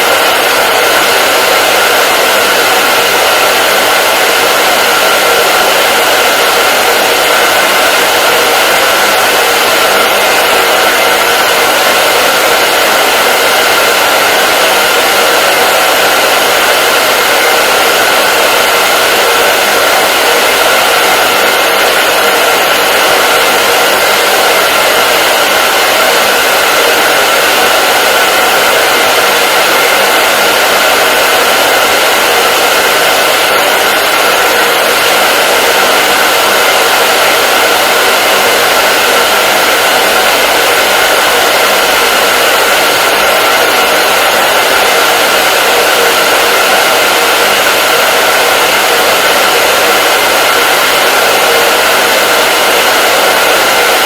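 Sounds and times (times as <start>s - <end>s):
hair dryer running: 0.0s - 54.0s.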